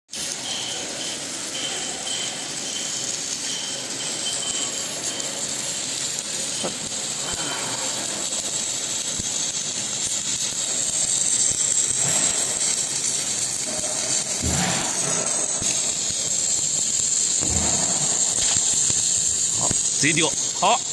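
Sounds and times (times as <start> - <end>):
machine hissing: 0.1 - 20.9
faint broken high tone: 0.4 - 5.3.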